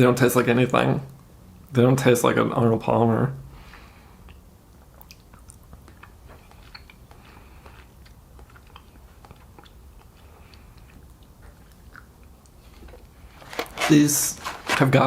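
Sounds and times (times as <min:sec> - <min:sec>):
person chewing: 0:03.7 - 0:13.9.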